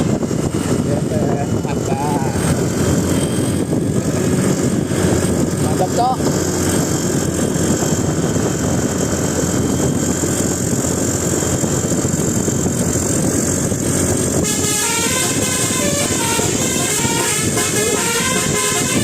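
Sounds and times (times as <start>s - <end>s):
bus and traffic rumble: 0.0s - 19.0s
musical bus horn tune: 14.4s - 19.0s.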